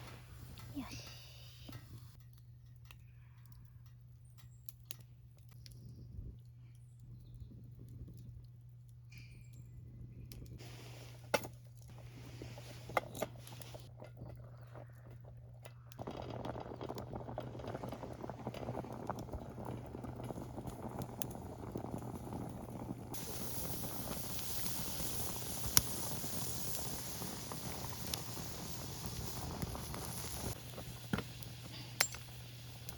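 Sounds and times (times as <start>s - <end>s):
burning wood crackling: 0.0s - 32.9s
steam hissing: 10.6s - 11.3s, 23.2s - 32.9s
pot of rice boiling: 10.6s - 32.9s.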